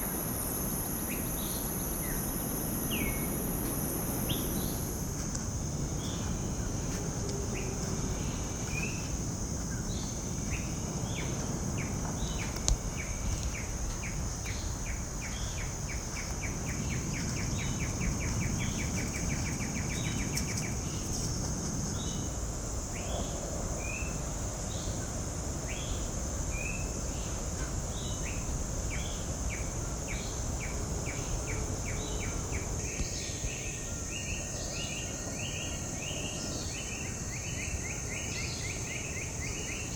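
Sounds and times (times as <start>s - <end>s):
high-pitched insect drone: 0.0s - 39.9s.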